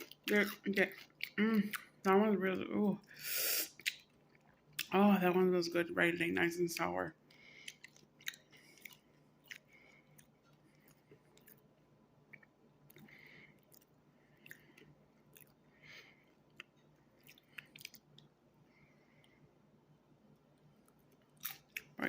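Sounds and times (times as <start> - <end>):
faint crunchy chewing: 3.7 - 4.9, 6.7 - 19.5, 20.2 - 22.0.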